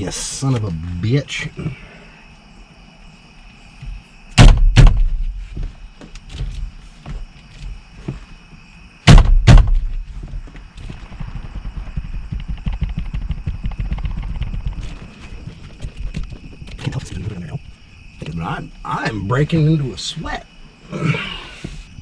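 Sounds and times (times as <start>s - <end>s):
low rattling knocks: 3.8s - 5.7s, 9.1s - 16.9s
heavy thuds on steering wheel: 3.8s - 7.3s, 9.1s - 10.4s.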